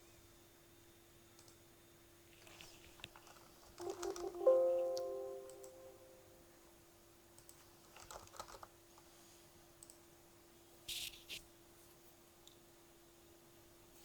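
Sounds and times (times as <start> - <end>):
keyboard typing: 3.8 - 6.1.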